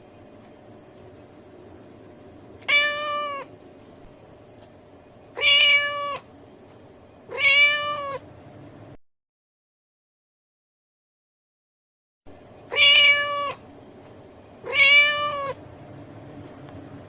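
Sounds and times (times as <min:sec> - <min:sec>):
cat meowing: 0:02.6 - 0:03.5, 0:05.4 - 0:06.3, 0:07.3 - 0:08.2, 0:12.7 - 0:13.6, 0:14.6 - 0:15.6.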